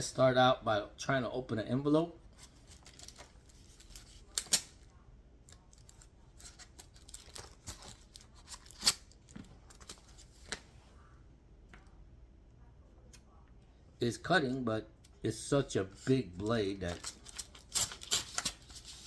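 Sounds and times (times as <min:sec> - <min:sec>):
paper rustling and tearing: 0:02.4 - 0:04.7, 0:05.8 - 0:10.6, 0:16.5 - 0:19.0
knife cutting paper envelope: 0:06.4 - 0:09.1, 0:16.8 - 0:19.0.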